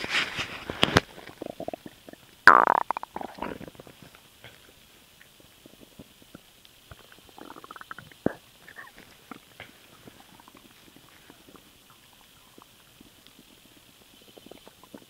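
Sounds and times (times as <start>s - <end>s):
stomach gurgling: 0.0s - 15.0s
sharp loud stomach pop: 2.5s - 3.6s.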